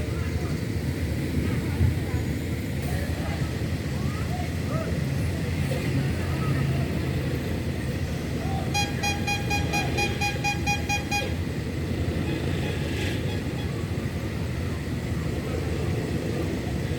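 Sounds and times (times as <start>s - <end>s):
traffic rumble: 0.0s - 16.9s
bus horn rapid beeps: 8.7s - 11.5s.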